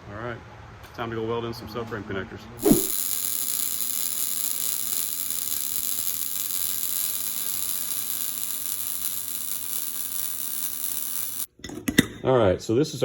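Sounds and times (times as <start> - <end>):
steady hiss: 2.6 - 11.5.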